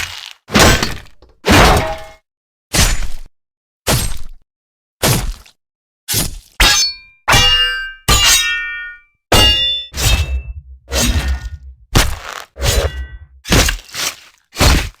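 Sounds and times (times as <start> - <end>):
sword slash hits: 9.4 - 14.9.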